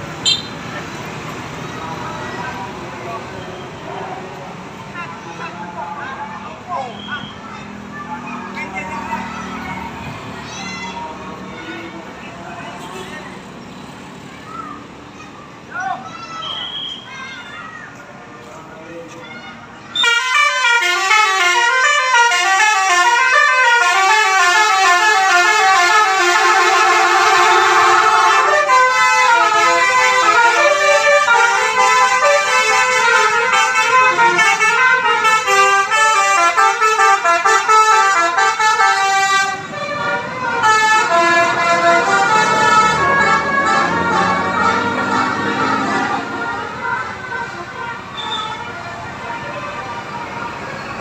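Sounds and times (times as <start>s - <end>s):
multi-tone bus horn melody: 0.2s - 0.7s, 20.0s - 51.0s.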